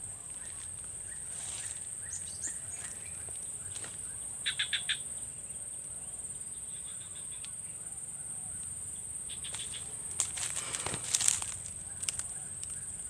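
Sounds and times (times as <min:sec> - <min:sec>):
high-pitched insect drone: 0:00.0 - 0:13.0
bird chirps: 0:00.4 - 0:05.2.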